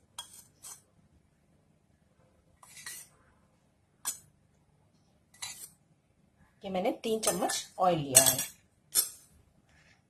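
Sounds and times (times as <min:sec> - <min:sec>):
spoon clinking against a bowl: 0:07.2 - 0:09.2.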